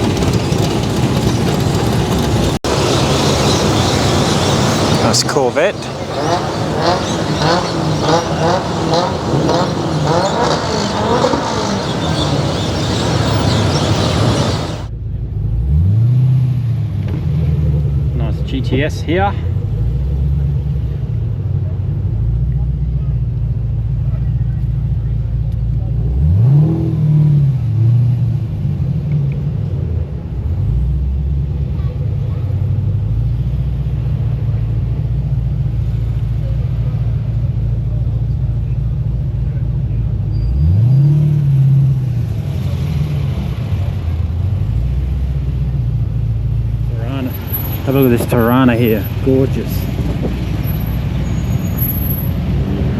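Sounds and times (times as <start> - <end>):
car engines in slow traffic: 0.0 - 52.9
people calling out: 4.4 - 13.9.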